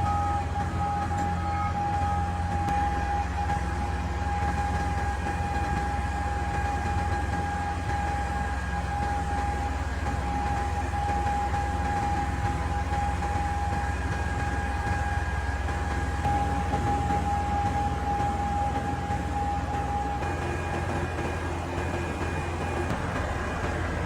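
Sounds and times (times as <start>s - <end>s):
diesel excavator engine rumbling: 0.0s - 24.0s
high-pitched whine: 0.0s - 24.0s.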